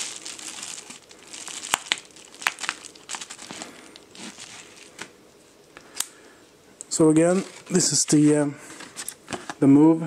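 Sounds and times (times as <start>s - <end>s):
plastic packaging crinkling: 0.0s - 5.2s.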